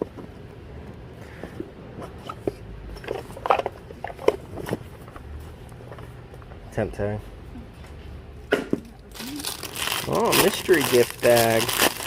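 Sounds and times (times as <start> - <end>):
rummaging rustles and crinkles: 9.1 - 12.0.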